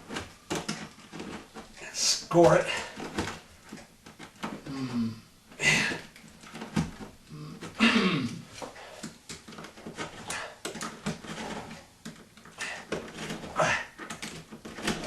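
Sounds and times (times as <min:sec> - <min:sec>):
blade scraping drywall: 0:08.8 - 0:15.0.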